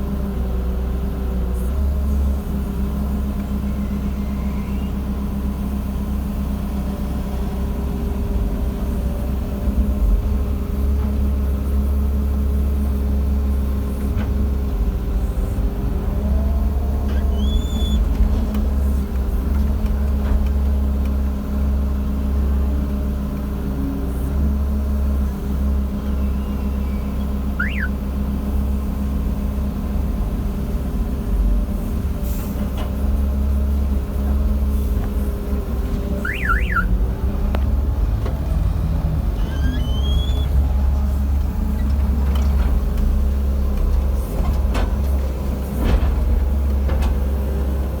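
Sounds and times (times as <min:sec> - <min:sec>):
excavator diesel engine droning: 0:00.0 - 0:48.0
short high chirps: 0:27.6 - 0:28.0, 0:36.2 - 0:36.9.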